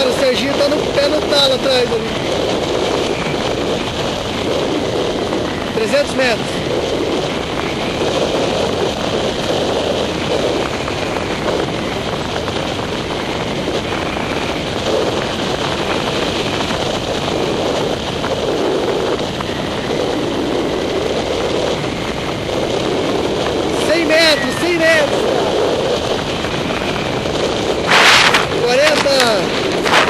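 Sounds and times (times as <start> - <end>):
wind rushing over microphone: 0.0 - 30.0.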